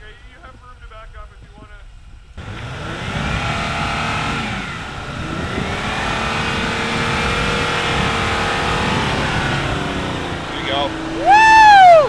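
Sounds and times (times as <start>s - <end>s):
vehicle engine revving: 2.4s - 12.0s.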